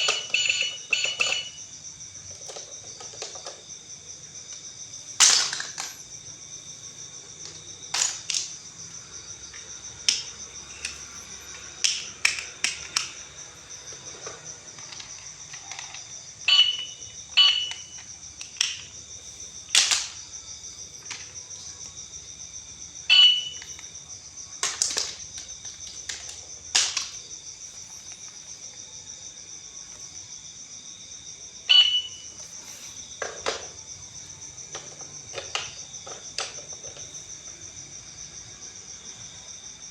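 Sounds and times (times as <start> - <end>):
plastic toy clicks: 0.0 - 1.6, 10.1 - 13.2, 14.2 - 18.9, 34.7 - 37.1
high insect-like trill: 0.0 - 2.2, 3.6 - 36.1
short electronic beep: 31.7 - 32.2.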